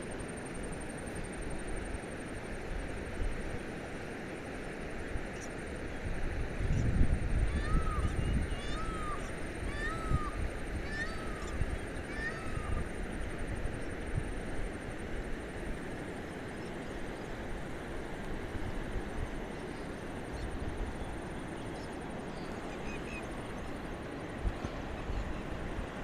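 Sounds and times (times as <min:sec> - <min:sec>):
faint bird chirps: 0:07.5 - 0:13.9, 0:19.6 - 0:23.9.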